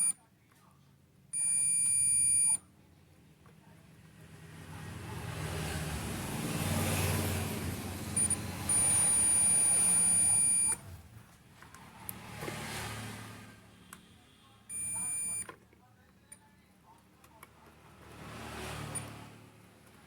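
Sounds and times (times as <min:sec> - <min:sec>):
multimeter buzzer beeping: 0:01.4 - 0:02.6, 0:08.1 - 0:10.8, 0:14.7 - 0:15.5
passing vehicle: 0:03.9 - 0:14.0, 0:17.6 - 0:20.0.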